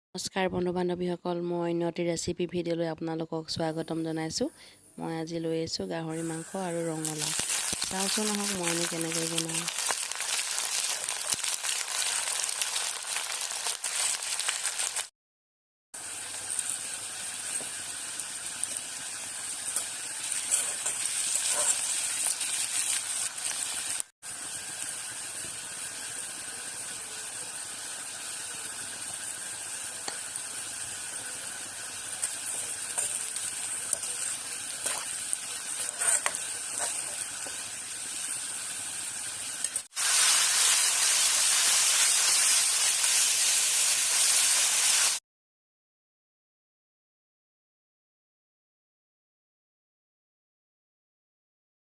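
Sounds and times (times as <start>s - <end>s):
food sizzling in hot oil: 6.1s - 15.1s, 16.0s - 45.2s.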